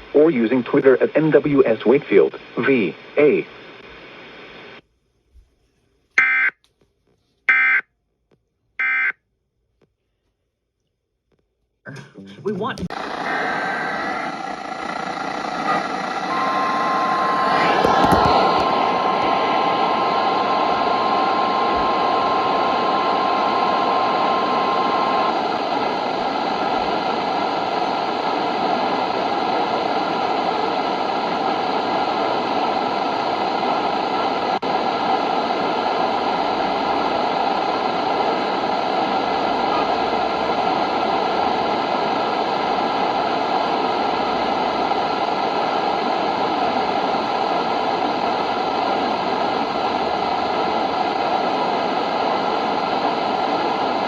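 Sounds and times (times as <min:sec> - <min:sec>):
radio static hiss: 0:00.0 - 0:04.8, 0:12.6 - 0:54.0
high-pitched tone: 0:13.2 - 0:25.3.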